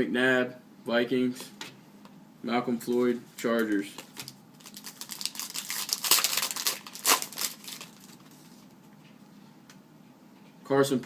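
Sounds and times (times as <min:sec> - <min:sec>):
plastic wrapper crinkling and tearing: 0:03.7 - 0:08.4.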